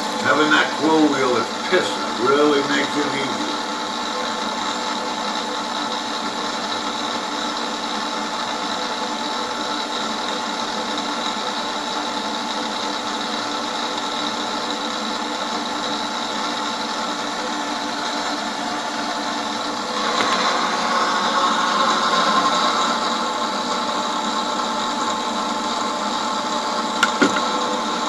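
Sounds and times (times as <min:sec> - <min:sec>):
higher tone: 0:00.0 - 0:04.2
power tool motor running: 0:00.0 - 0:28.0.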